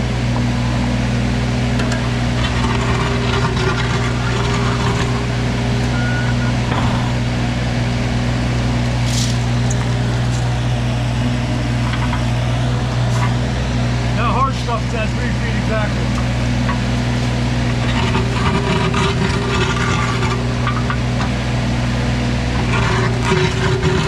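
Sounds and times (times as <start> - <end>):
excavator diesel engine running: 0.0 - 24.0
metal clanks and scrapes: 1.8 - 7.3, 9.0 - 10.8, 11.6 - 13.5, 16.1 - 21.5, 22.5 - 24.0.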